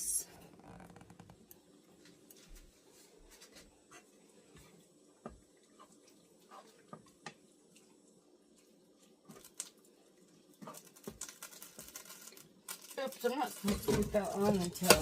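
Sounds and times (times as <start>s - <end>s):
faint steady hum: 0.0s - 15.0s
kitchen items clicking and knocking: 13.0s - 15.0s.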